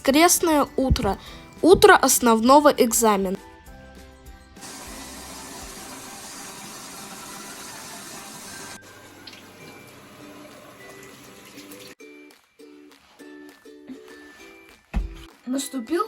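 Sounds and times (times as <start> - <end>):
faint background music: 0.0 - 16.0
water running: 4.6 - 12.0.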